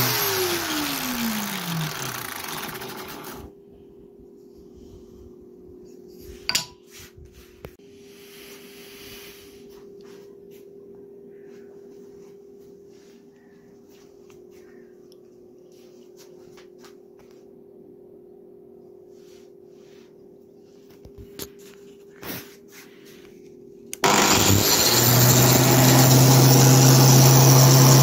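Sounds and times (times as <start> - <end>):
angle grinder motor humming: 0.0 - 3.5, 24.0 - 28.0.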